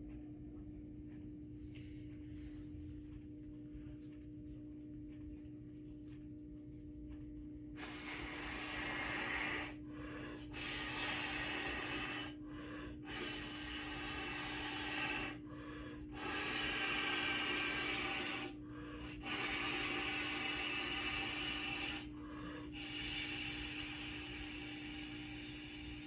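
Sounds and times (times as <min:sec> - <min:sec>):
person drawing breath: 0:07.8 - 0:26.0.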